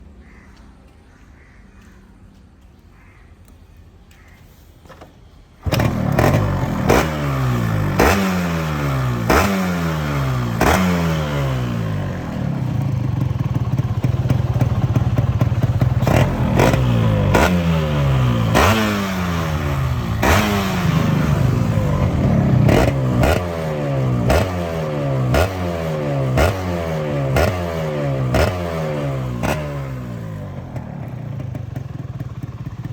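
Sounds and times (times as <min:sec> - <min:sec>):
motorcycle engine revving: 0:05.6 - 0:32.9.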